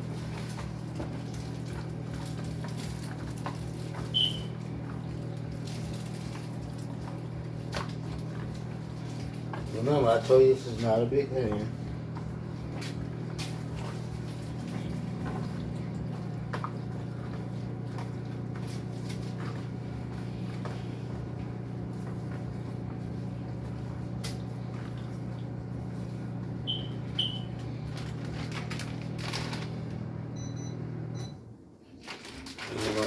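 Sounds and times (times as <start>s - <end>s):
kitchen appliance humming: 0.0s - 33.0s
short high beeps: 4.2s - 4.5s, 26.7s - 27.5s.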